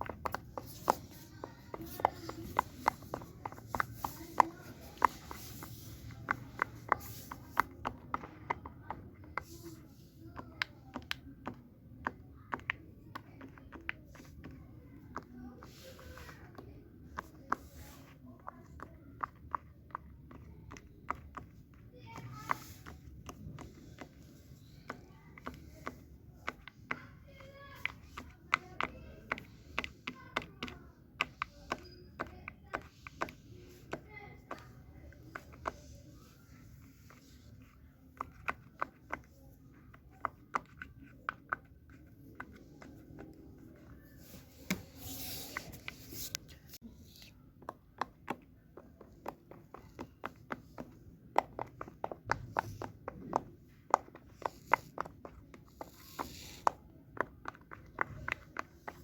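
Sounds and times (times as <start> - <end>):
fidget toys clicking: 49.2 - 59.0
fidget toy clicking: 53.3 - 56.8.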